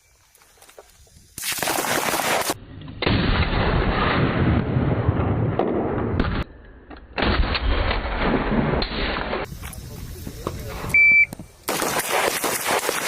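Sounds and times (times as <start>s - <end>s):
rapid gunfire: 1.4s - 2.6s, 11.7s - 13.0s.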